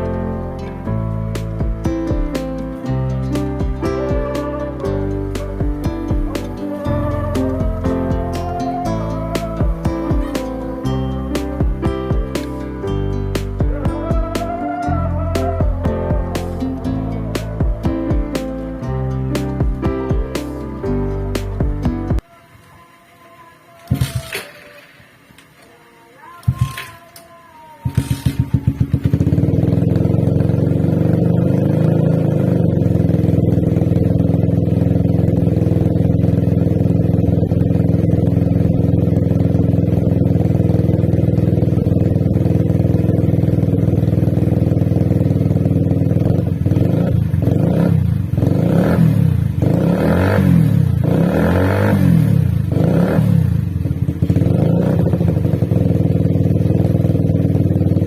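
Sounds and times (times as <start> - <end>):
motorcycle engine revving: 0.8 - 20.8, 27.8 - 58.0
motorcycle engine starting and idling: 27.8 - 58.0.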